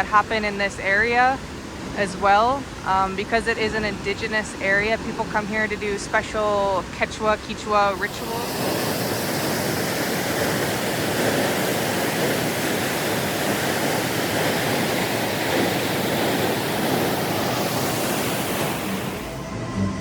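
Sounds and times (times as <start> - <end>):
waterfall rushing: 7.6 - 19.5.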